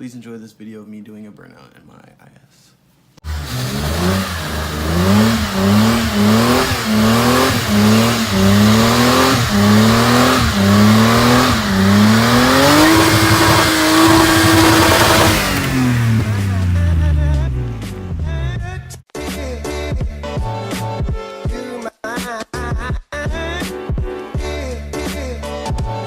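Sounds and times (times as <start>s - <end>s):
car engine revving: 3.2s - 19.0s.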